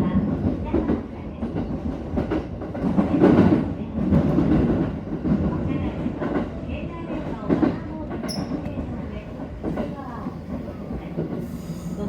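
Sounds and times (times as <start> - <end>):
electric train rumbling on track: 0.0 - 12.0
high train squeal: 8.3 - 8.7.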